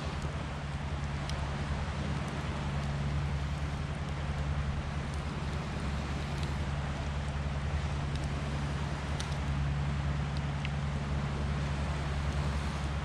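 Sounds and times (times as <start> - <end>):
campfire crackling: 0.0 - 13.0
low hum and rushing noise: 0.0 - 13.0.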